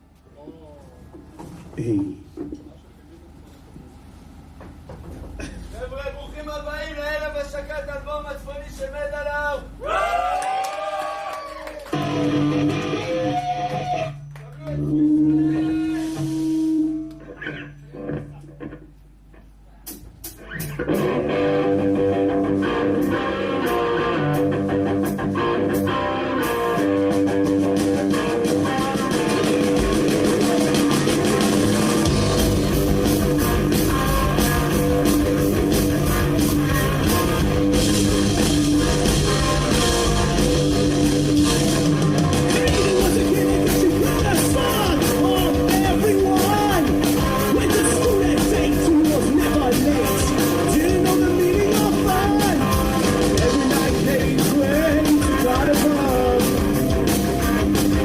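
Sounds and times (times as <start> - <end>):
rock band playing live: 11.9 - 18.9, 19.8 - 58.0.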